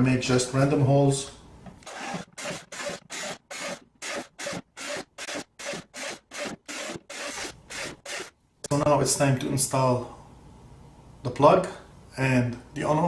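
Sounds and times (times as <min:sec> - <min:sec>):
hand tool rasping plastic: 0:01.8 - 0:08.3.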